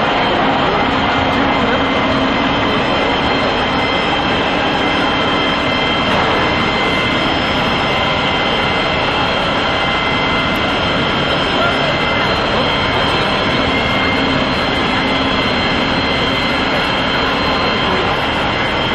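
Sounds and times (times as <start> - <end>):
high steady whining tones: 0.0 - 18.9
machine rushing roar: 0.0 - 18.9.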